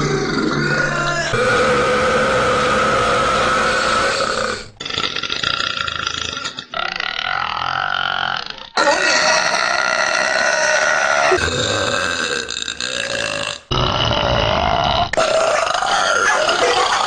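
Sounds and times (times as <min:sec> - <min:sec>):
women burping: 0:08.7 - 0:17.0.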